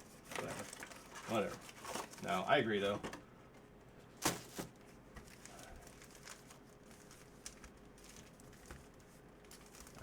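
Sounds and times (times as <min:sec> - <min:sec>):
foil packs crinkling: 0:00.3 - 0:02.6, 0:04.2 - 0:10.0.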